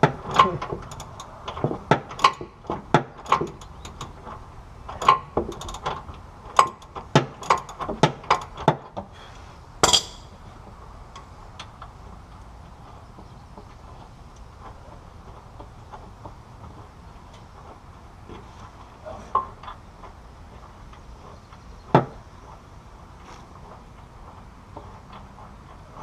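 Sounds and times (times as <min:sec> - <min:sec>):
ratchet wrench clicking: 0:00.2 - 0:02.5, 0:03.2 - 0:04.2, 0:04.9 - 0:08.7
metallic clank: 0:09.8 - 0:10.4.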